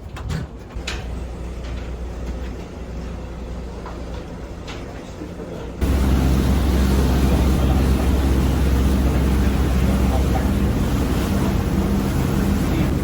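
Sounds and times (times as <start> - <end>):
engine humming: 5.8 - 13.0
rushing wind: 5.8 - 13.0
water noise: 5.8 - 13.0.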